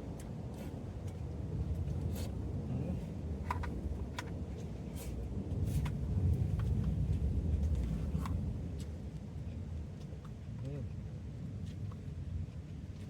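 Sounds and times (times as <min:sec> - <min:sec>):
low fire rumble: 0:00.0 - 0:11.5.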